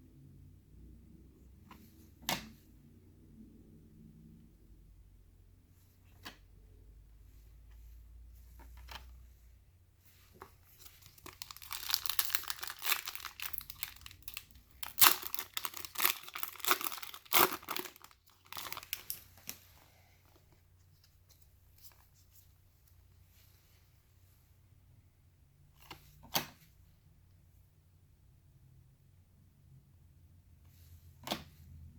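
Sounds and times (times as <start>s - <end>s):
card pack wrapper tearing: 10.8s - 19.2s.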